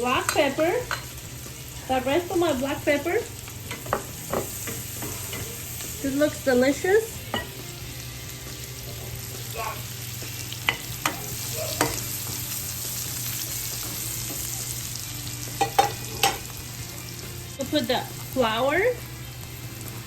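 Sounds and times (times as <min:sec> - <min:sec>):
onion sizzling in oil: 0:00.0 - 0:20.0
utensil knocking against pan: 0:15.6 - 0:16.4.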